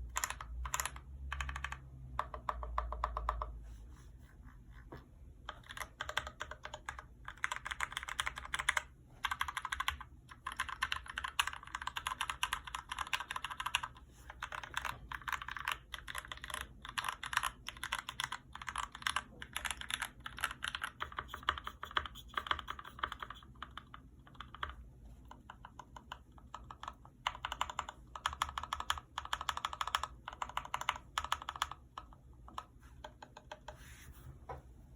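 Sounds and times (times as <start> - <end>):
mechanical keyboard typing: 0.0 - 3.6, 5.4 - 33.8.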